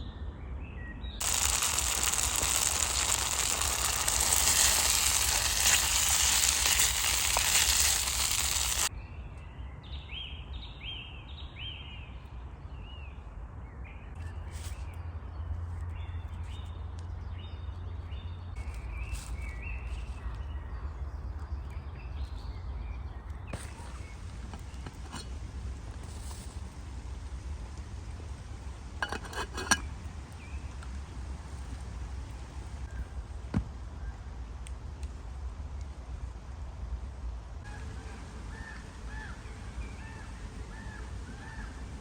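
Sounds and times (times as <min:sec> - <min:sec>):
loud steady hiss: 0:01.2 - 0:08.9, 0:23.5 - 0:33.4, 0:35.1 - 0:42.0
songbirds chirping: 0:37.7 - 0:42.0.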